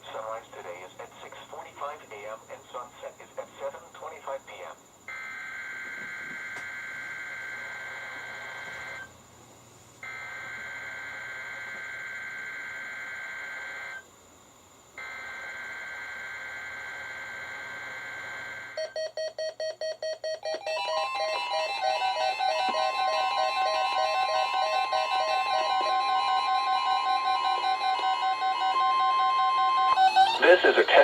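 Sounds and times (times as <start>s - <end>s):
tune of electronic tones: 20.3s - 31.0s.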